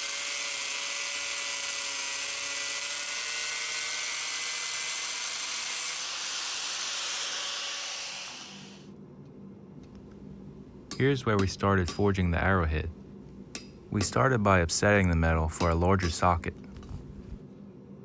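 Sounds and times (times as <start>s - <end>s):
motor tool whining: 0.0s - 8.9s.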